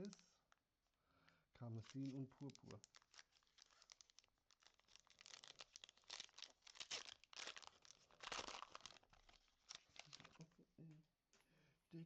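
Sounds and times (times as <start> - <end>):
foil wrapper tearing and crinkling: 1.9 - 10.4.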